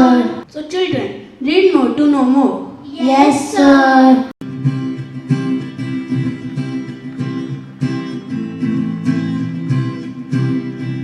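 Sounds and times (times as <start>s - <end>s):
acoustic guitar strumming chords: 4.4s - 11.0s.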